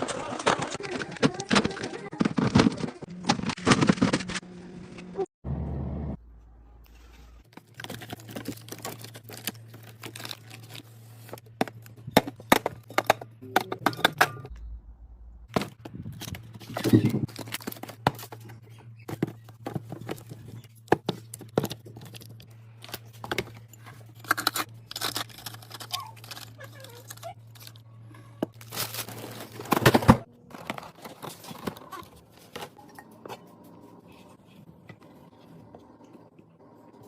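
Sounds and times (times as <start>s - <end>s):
food packaging handled: 7.4s - 11.9s, 15.5s - 18.5s, 28.5s - 32.7s.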